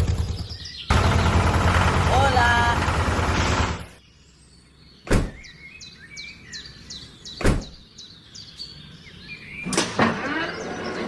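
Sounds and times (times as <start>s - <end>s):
birds chirping: 0.0s - 11.0s.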